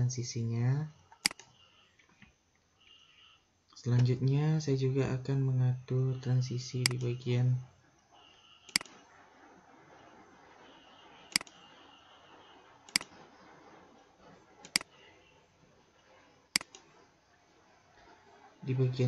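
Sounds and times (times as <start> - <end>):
faint room hiss: 0.0 - 19.0
computer mouse clicks: 1.2 - 1.6, 8.7 - 9.0, 11.3 - 11.6, 12.9 - 13.1, 14.6 - 14.9, 16.6 - 16.9.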